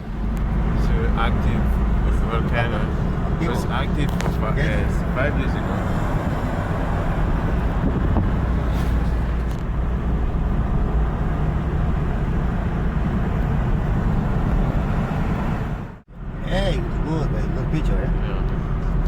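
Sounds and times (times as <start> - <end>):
vehicle engine rumble: 0.0 - 19.0.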